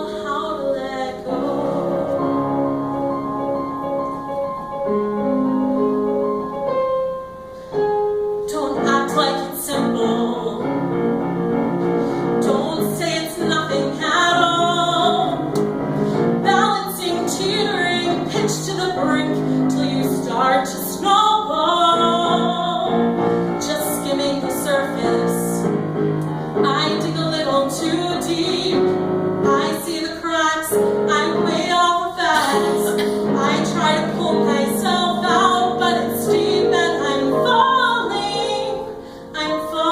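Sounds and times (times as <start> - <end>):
woman singing a ballad: 0.0 - 2.4, 8.5 - 10.7, 12.4 - 15.6, 16.4 - 25.7, 26.6 - 39.9
piano accompaniment: 0.0 - 39.9.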